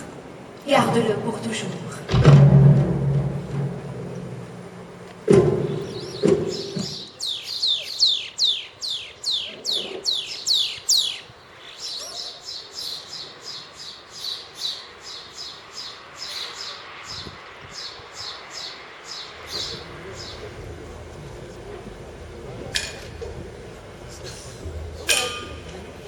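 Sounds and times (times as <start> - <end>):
high bird chirps: 5.6 - 20.4
bird whistling: 5.7 - 16.7.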